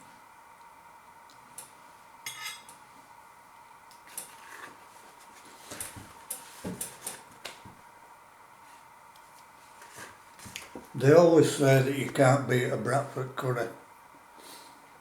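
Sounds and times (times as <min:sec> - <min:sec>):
cutlery clinking against a dish: 0:02.3 - 0:02.8.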